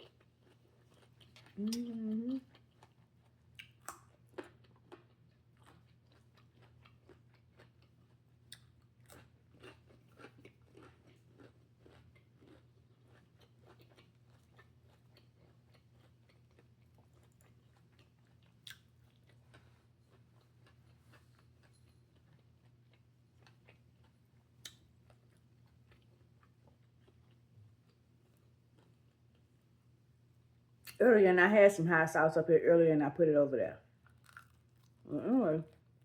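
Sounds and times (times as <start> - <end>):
chewing food: 0.0 - 29.7, 34.0 - 36.0
faint low hum: 0.0 - 36.0
mouth clicks: 1.6 - 2.1.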